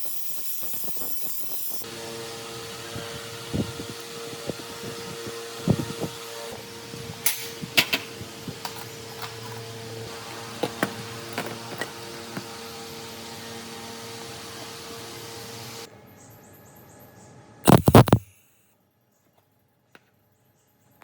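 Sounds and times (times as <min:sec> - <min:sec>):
small electric motor humming: 0:00.0 - 0:15.9, 0:17.7 - 0:18.2.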